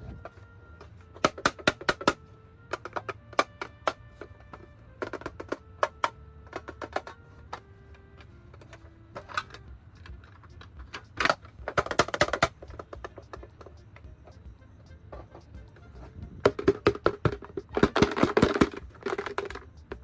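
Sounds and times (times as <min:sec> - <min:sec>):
faint steady tones: 0:00.0 - 0:20.0
plastic toy pieces clicking: 0:01.1 - 0:13.7, 0:16.4 - 0:20.0.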